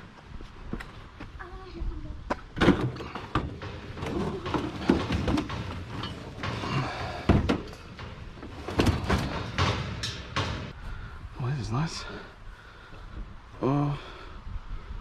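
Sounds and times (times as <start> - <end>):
hard objects knocking and clattering: 2.6 - 10.8.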